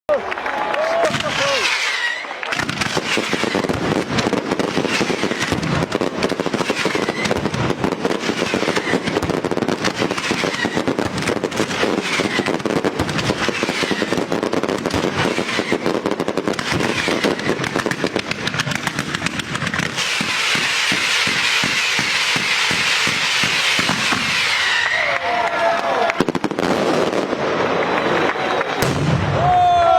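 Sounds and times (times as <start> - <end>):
fireworks crackling and banging: 0.3 - 29.7
falling firework whistles: 1.1 - 5.7, 6.5 - 14.3, 14.9 - 25.3.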